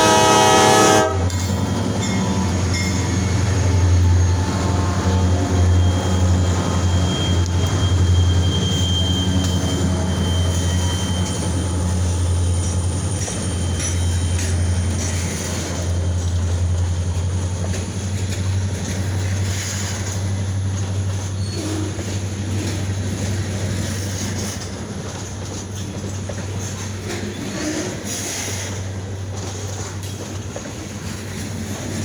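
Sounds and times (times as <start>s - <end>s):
freight train rumbling past: 0.0s - 32.0s
high wheel squeal: 1.4s - 16.4s, 21.2s - 22.9s.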